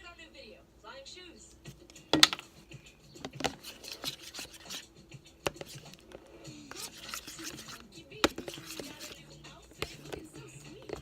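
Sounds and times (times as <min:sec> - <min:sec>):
slime rubbing and scraping: 0:03.3 - 0:04.9, 0:05.5 - 0:11.0.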